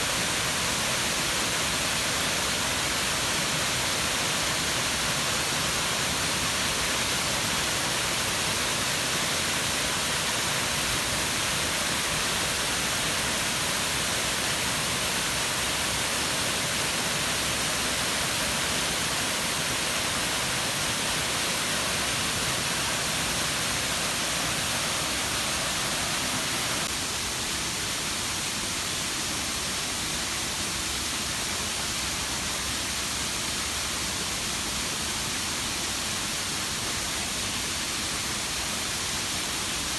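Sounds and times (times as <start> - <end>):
water rushing down waterfall: 0.0 - 39.9.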